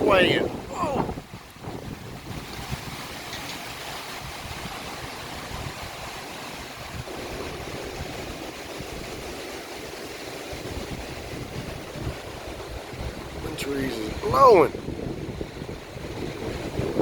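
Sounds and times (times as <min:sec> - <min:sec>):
gusty wind through trees: 0:00.0 - 0:17.0
wind buffeting microphone: 0:00.0 - 0:17.0.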